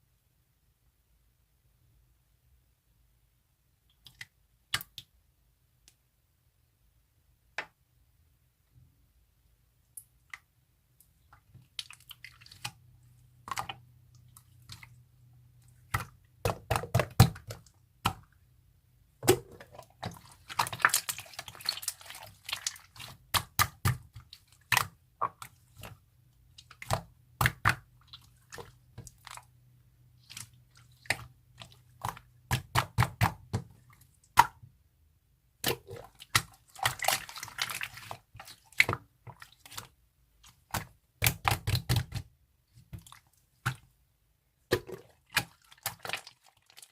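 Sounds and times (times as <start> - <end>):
slime squishing and popping: 26.6 - 29.5, 30.2 - 33.7, 40.5 - 42.3.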